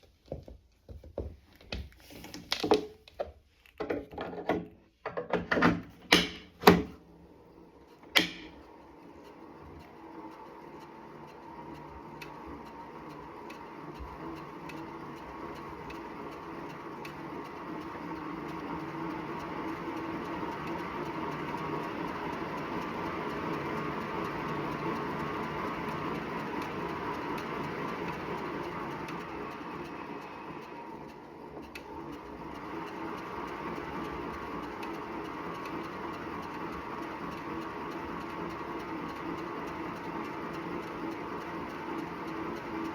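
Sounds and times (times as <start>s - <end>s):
knocks and clunks of handling: 0.0s - 7.0s
exercise bike whirring: 6.1s - 42.9s.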